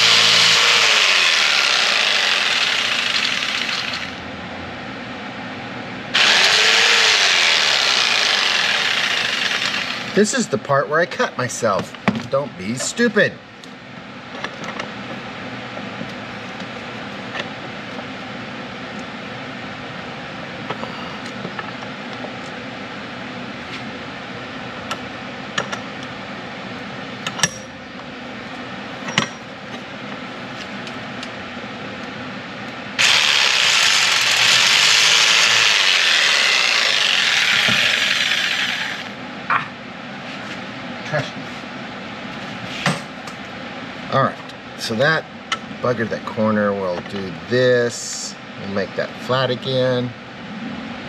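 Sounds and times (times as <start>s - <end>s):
power tool cutting metal: 0.0s - 4.2s, 6.2s - 10.2s, 33.0s - 39.1s.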